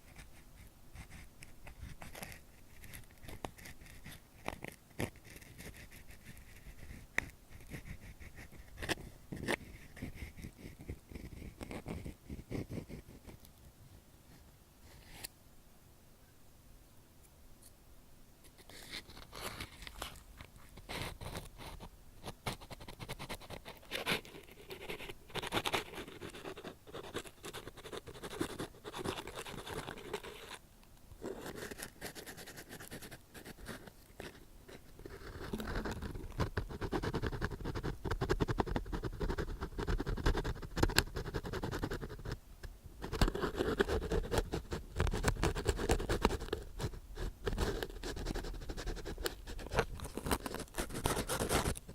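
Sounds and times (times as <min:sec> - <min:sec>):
ear pick scratching close: 0:43.0 - 0:51.9.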